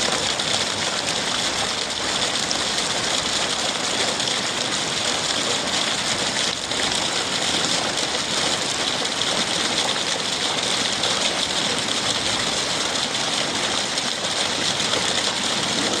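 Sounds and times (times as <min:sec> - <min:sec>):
rainwater splashing from gutter: 0:00.0 - 0:16.0.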